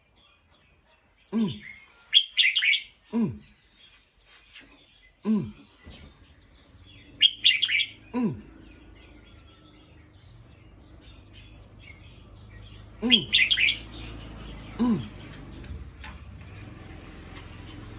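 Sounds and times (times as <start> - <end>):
bulbul chirping: 7.2 - 8.1, 13.0 - 14.0.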